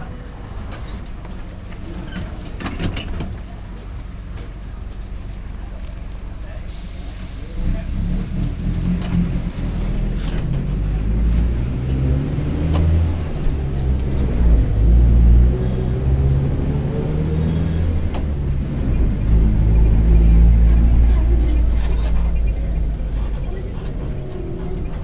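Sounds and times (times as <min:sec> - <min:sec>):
bus diesel engine running: 0:00.0 - 0:25.0
driveshaft rumbling: 0:07.9 - 0:25.0.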